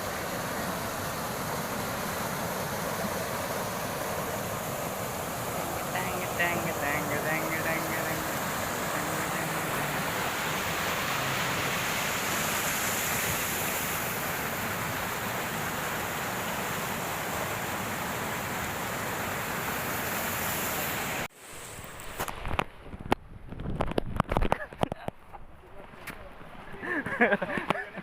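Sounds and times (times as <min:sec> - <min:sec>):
waterfall rushing: 0:00.0 - 0:21.3.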